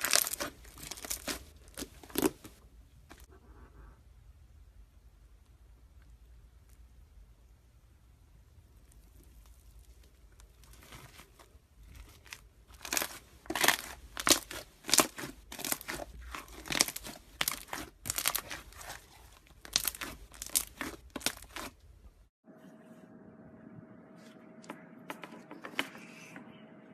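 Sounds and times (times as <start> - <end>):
slime crackling when squeezed: 0.0 - 2.4, 12.2 - 21.7.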